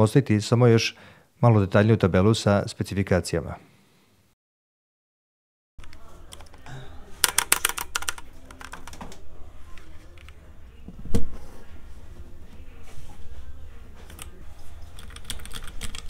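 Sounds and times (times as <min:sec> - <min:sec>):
mechanical keyboard typing: 0:07.2 - 0:09.0, 0:15.0 - 0:16.0.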